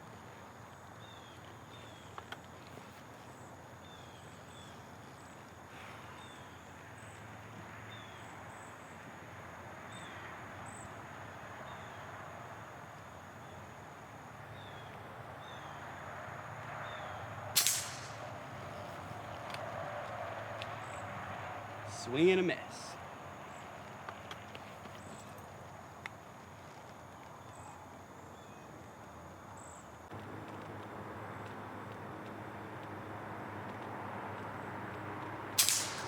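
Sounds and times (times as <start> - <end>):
insects chirping: 0.0 - 36.0
air rifle shot: 17.6 - 18.6, 35.6 - 36.0.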